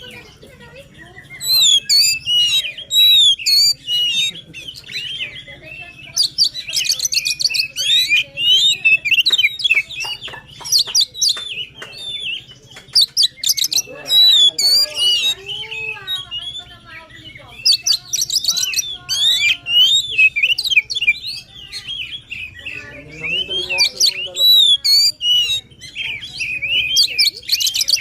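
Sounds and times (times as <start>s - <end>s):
bird singing whistled phrases: 1.0s - 28.0s
bird sharp clicking notes: 6.8s - 14.4s.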